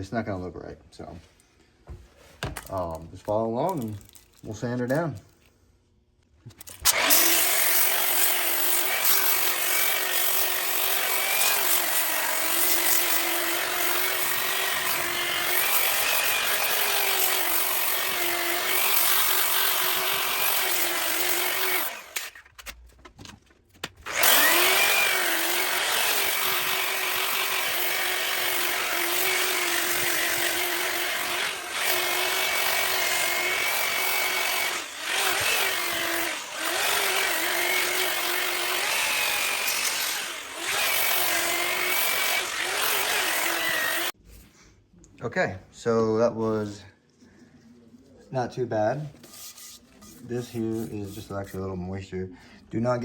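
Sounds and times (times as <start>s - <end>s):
grinder motor whine: 6.9s - 22.4s, 24.0s - 44.1s.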